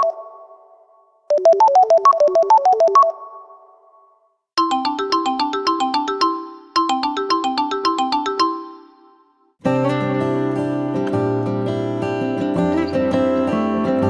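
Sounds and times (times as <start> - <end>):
bell-like electronic ringtone: 0.0 - 9.4
melodic ringtone phrase: 1.3 - 3.2, 4.6 - 9.1.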